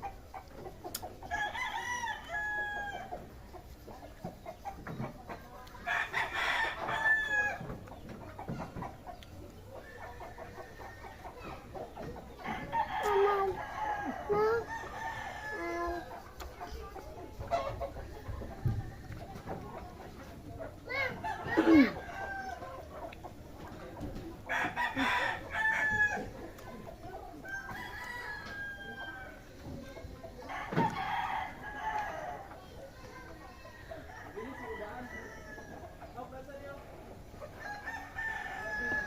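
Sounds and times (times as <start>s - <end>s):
rooster crowing: 1.3s - 3.1s, 34.1s - 35.8s, 37.6s - 39.0s
low clucking: 7.5s - 28.6s.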